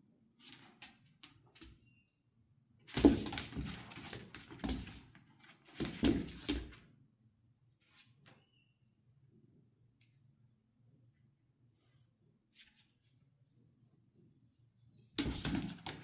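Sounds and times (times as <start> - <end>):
pets scuffling and thumping: 2.9 - 6.8, 15.2 - 16.0.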